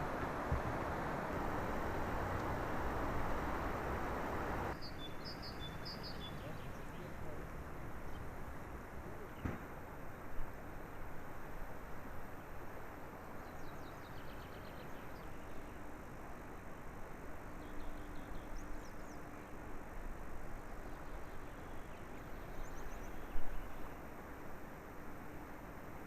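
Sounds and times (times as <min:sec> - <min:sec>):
steady rush of noise: 0:00.0 - 0:04.8
small birds chirping: 0:00.0 - 0:08.4
faint distant engine hum: 0:00.0 - 0:26.0.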